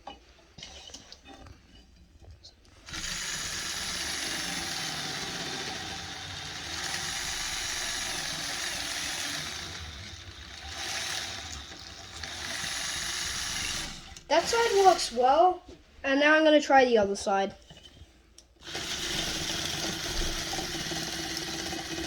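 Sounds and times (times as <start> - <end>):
toy motor whirring gears: 2.9 - 15.3, 18.6 - 22.0.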